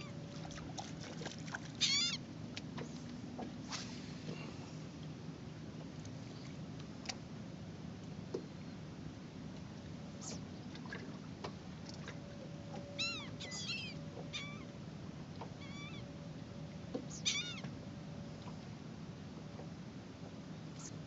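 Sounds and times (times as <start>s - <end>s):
steady low hum: 0.0s - 21.0s
seagulls mewing cries: 1.8s - 2.2s, 12.9s - 14.7s, 15.6s - 16.1s, 17.1s - 17.7s.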